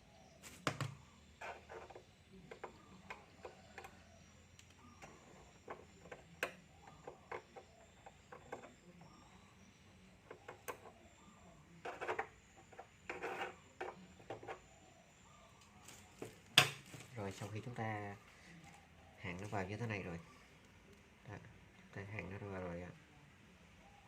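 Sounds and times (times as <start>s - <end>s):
small tools clicking and tapping: 1.7s - 4.0s, 4.6s - 8.8s.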